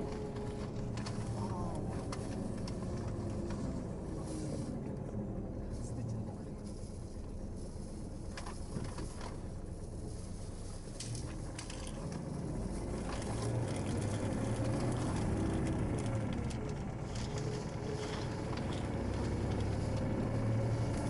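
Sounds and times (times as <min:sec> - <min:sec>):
low vehicle rumble: 0:00.0 - 0:21.0.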